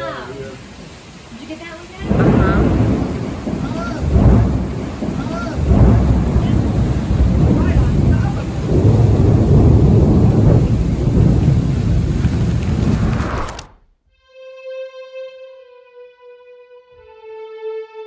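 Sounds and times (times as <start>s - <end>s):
thunder rumbling: 0.0s - 13.8s.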